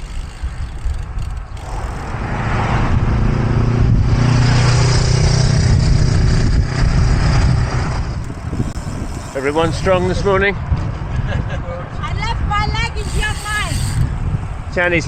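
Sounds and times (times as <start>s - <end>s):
road noise: 0.0s - 15.0s.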